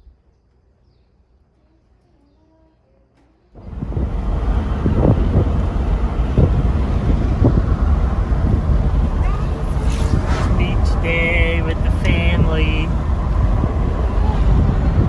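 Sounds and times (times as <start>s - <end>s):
wind buffeting microphone: 3.6s - 15.0s.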